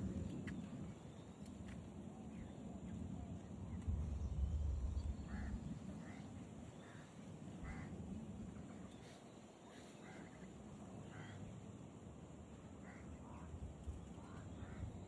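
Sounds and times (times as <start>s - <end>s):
low rumble: 3.8s - 5.3s.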